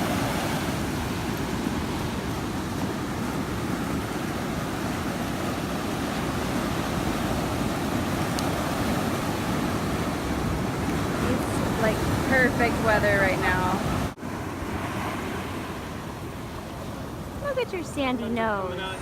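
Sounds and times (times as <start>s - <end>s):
ocean surf: 0.0s - 19.0s
wind buffeting microphone: 0.0s - 19.0s.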